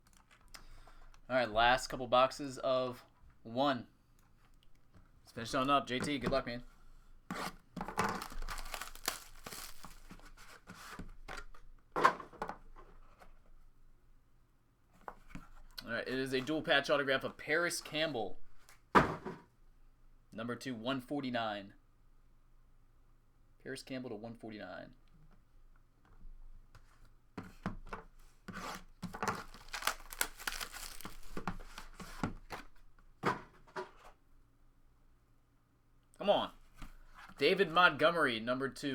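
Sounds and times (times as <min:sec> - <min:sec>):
packaging torn and crinkled: 0:08.0 - 0:10.3, 0:29.1 - 0:31.9.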